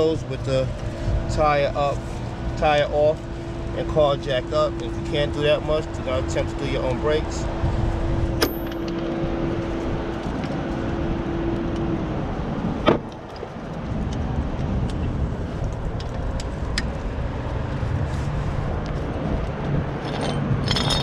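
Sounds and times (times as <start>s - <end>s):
wind buffeting microphone: 4.8s - 21.0s.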